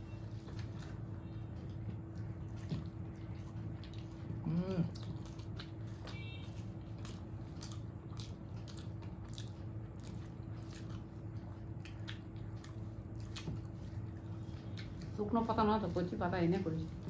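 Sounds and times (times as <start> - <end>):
person chewing food: 0.0 - 15.3.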